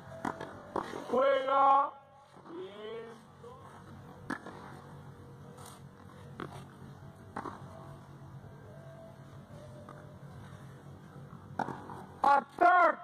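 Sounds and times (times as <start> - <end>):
faint steady hum: 0.0 - 13.0
rackets hitting tennis ball: 0.1 - 1.2, 4.2 - 4.9, 7.3 - 7.7, 11.5 - 12.6.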